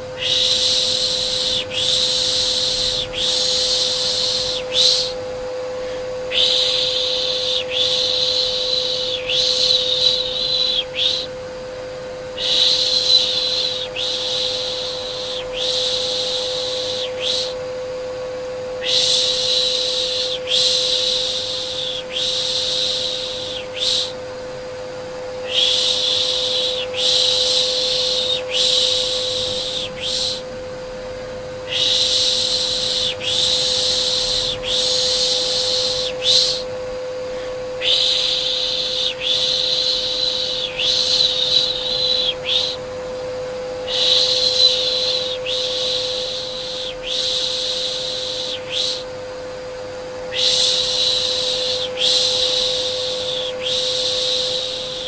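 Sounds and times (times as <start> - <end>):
vacuum cleaner humming: 0.0 - 55.0
person shushing: 5.8 - 11.3, 18.8 - 24.2, 25.4 - 30.5, 31.7 - 42.8.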